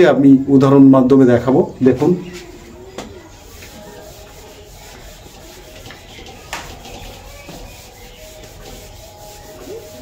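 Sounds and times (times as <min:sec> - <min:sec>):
writing on a board: 0:03.0 - 0:10.0.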